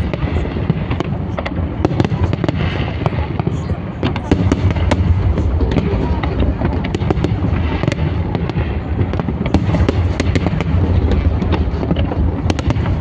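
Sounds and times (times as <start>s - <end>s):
fireworks cracking and popping: 0.0s - 13.0s
low rumble of bursts: 2.8s - 13.0s.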